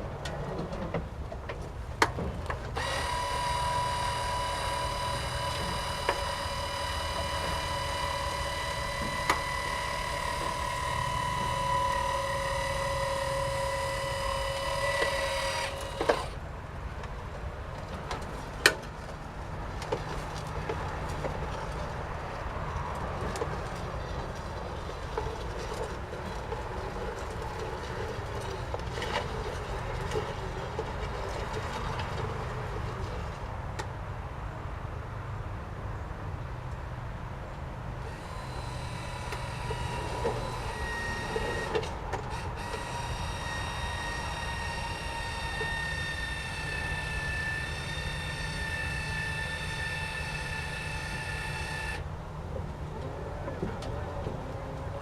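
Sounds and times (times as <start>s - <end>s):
electric motor whine: 2.8s - 16.4s, 38.0s - 52.0s.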